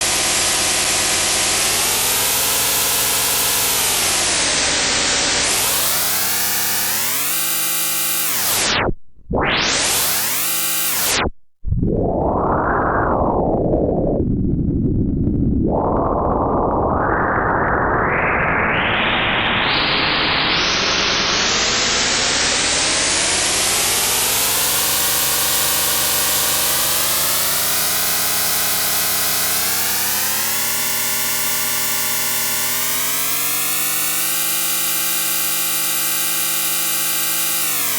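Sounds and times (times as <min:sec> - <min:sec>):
electronic humming tones: 0:00.1 - 0:12.2, 0:24.2 - 0:37.9.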